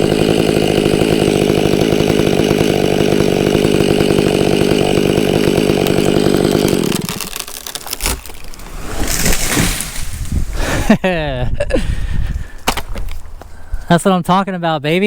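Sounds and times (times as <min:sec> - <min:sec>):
wood cracking: 0:00.0 - 0:10.8, 0:12.4 - 0:13.6
chainsaw cutting: 0:00.0 - 0:11.0
tree crashing down: 0:00.0 - 0:11.0.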